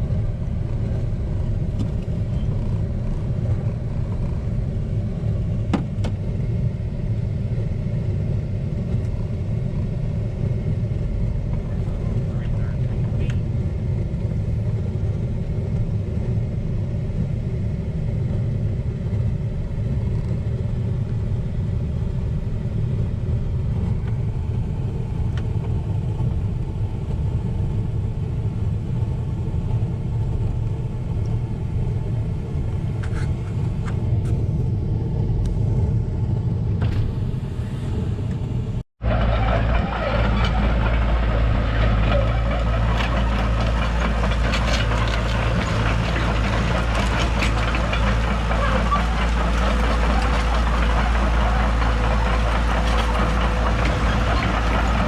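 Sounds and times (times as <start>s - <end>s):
vehicle engine and road rumble: 0.0s - 55.0s
rattling engine running: 39.0s - 55.0s.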